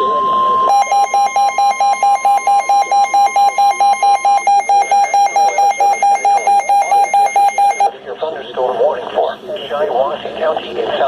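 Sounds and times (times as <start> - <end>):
faint steady warning tone: 0.0 - 7.9
rapid alarm beeps: 0.0 - 7.9.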